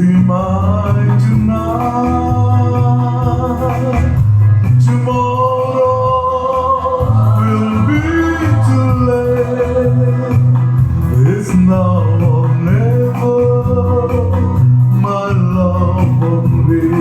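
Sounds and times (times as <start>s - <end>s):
guitar: 0.0s - 17.0s
repeating bass line: 0.0s - 17.0s
slow ballad: 0.0s - 17.0s.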